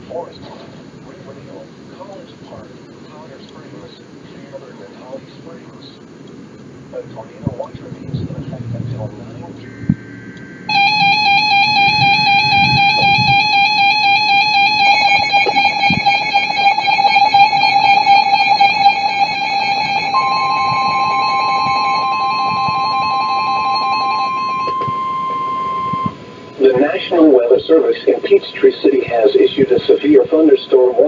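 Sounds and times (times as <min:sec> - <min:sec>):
warbling electronic alarm: 0:08.5 - 0:31.0
steady alert tone: 0:08.6 - 0:29.5.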